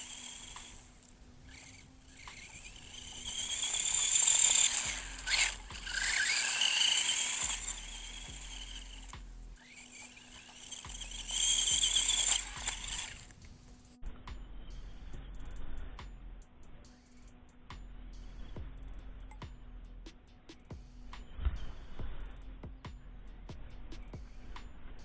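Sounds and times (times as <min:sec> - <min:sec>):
electric motor whining: 0:00.0 - 0:13.4
tyre hiss: 0:00.0 - 0:14.1, 0:14.7 - 0:19.5.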